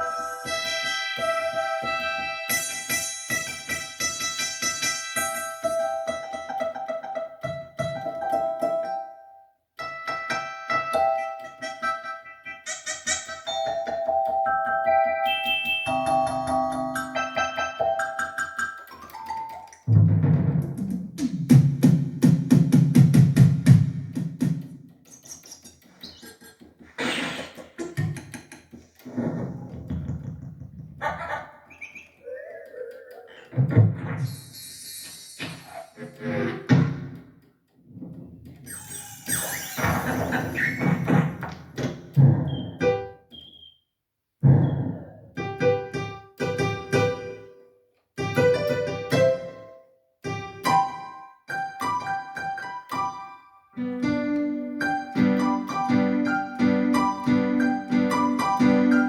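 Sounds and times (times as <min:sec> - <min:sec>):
keyboard notes: 0:00.0 - 0:03.8, 0:09.8 - 0:20.0, 0:48.2 - 0:59.0
keyboard drum rhythm: 0:14.0 - 0:26.1, 0:48.2 - 0:49.7
gliding animal-like calls: 0:31.7 - 0:36.2.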